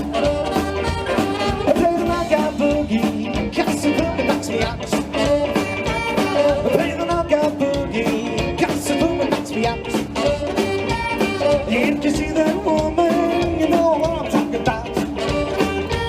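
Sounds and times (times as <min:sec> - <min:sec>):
guitar: 0:00.0 - 0:16.0
live rock band playing: 0:00.0 - 0:16.0
steady drum beat: 0:00.0 - 0:16.0.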